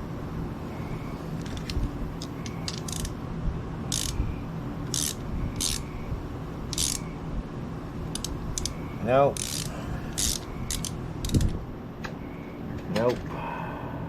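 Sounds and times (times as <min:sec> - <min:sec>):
steady fan hum: 0:00.0 - 0:14.0
hand ratchet clicking: 0:01.4 - 0:03.1, 0:03.9 - 0:04.2, 0:04.8 - 0:05.9, 0:06.7 - 0:07.0, 0:08.1 - 0:08.8, 0:09.4 - 0:11.6.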